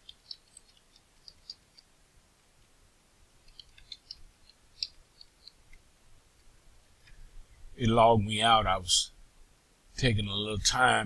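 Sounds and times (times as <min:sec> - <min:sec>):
computer keyboard and mouse clicking: 0:00.0 - 0:01.9, 0:03.4 - 0:05.8.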